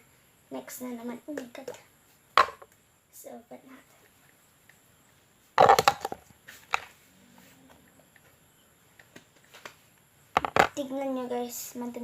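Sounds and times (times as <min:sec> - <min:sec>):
plastic tub clicks: 0:02.4 - 0:02.7, 0:10.4 - 0:10.8.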